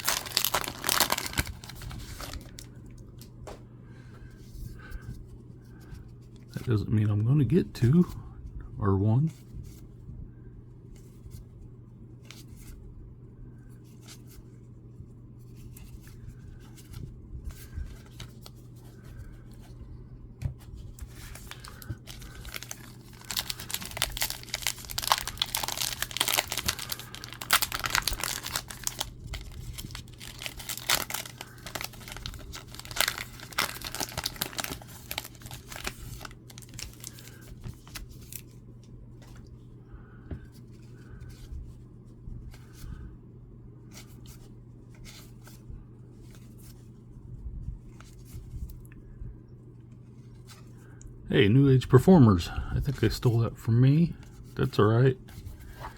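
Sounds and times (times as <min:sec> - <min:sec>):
foil wrapper tearing and crinkling: 0:00.0 - 0:02.7, 0:21.0 - 0:38.4.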